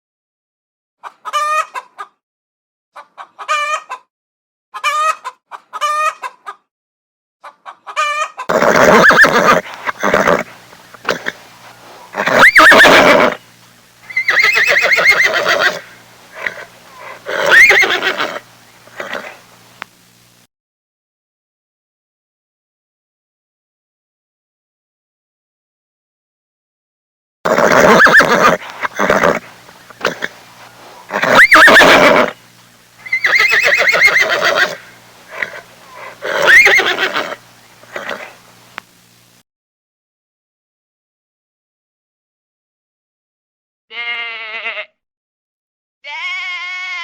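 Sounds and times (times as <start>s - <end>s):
horse whinnying: 8.5s - 13.4s, 14.1s - 19.4s, 27.5s - 32.4s, 33.0s - 38.4s.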